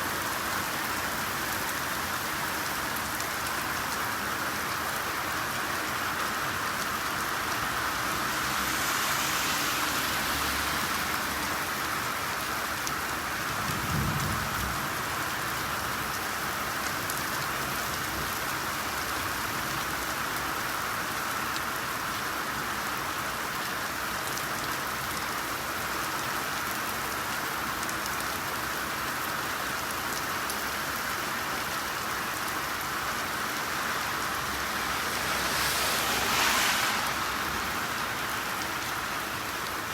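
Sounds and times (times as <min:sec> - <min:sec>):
steady rainfall hiss: 0:00.0 - 0:39.9.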